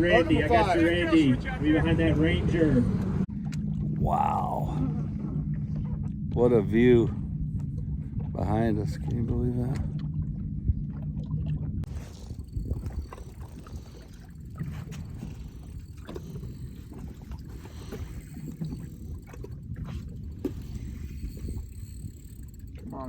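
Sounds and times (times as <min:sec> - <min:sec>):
engine hum: 0:00.0 - 0:23.0
low wind: 0:00.0 - 0:23.0
water rumble: 0:00.0 - 0:23.0.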